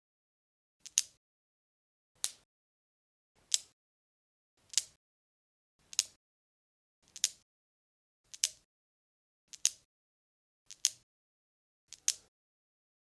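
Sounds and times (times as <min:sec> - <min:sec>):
newton's cradle balls clicking: 0:07.0 - 0:07.4, 0:11.9 - 0:12.3.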